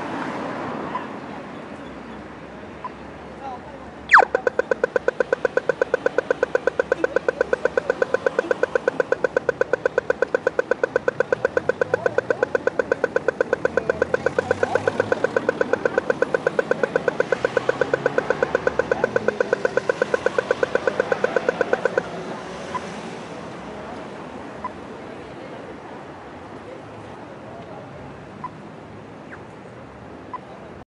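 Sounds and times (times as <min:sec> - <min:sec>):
traffic noise: 0:00.0 - 0:30.8
crossing signal ticking: 0:04.1 - 0:22.2.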